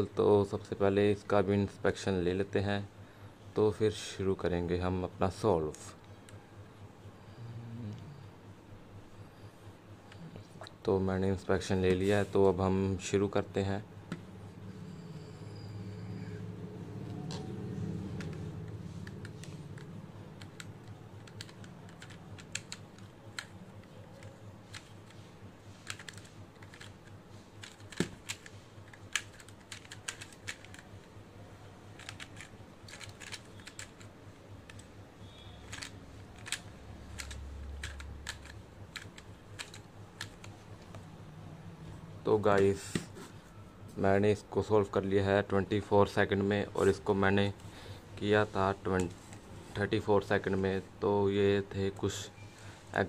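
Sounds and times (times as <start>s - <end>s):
plastic puzzle pieces clicking: 19.1s - 25.2s, 25.9s - 31.1s, 31.9s - 34.9s, 35.6s - 40.6s.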